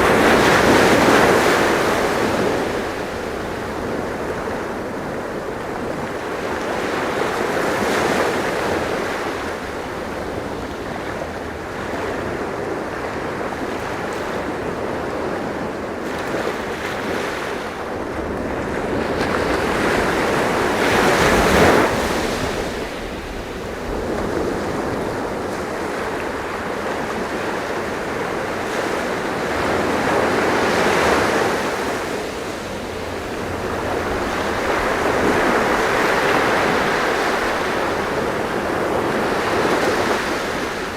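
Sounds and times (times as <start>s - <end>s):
waves washing in: 0.0s - 40.9s.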